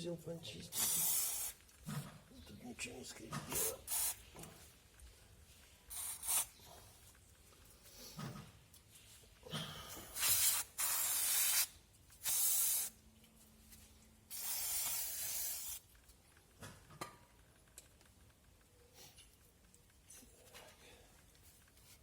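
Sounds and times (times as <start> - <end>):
aerosol spray hissing: 0.7 - 1.6, 3.6 - 4.2, 5.9 - 6.5, 10.2 - 13.0, 14.3 - 15.8.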